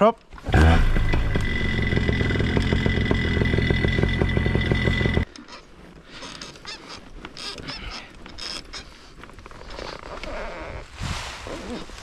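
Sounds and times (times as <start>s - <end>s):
paramotor engine and propeller: 0.4s - 5.3s.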